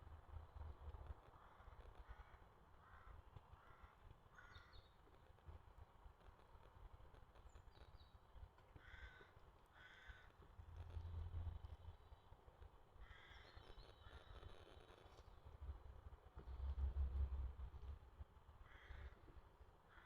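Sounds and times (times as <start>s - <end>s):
faint bird calls: 1.4s - 5.0s, 7.8s - 12.3s, 13.0s - 15.4s, 18.6s - 19.3s.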